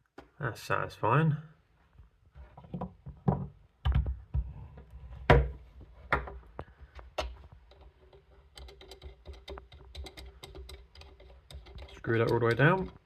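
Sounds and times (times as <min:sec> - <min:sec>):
hard plastic knocks and clicks: 0:07.1 - 0:13.0.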